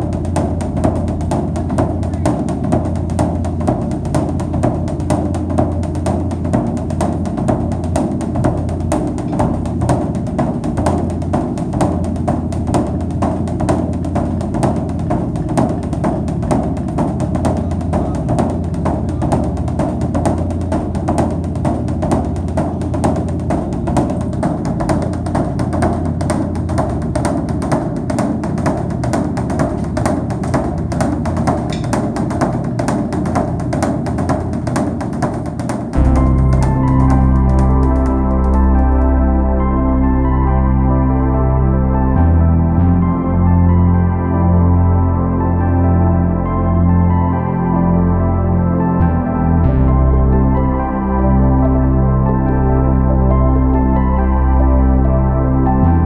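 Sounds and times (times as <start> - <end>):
sustained low bass: 0.0 - 31.9, 35.9 - 56.0
fast drum and wood-block beat: 0.0 - 39.0.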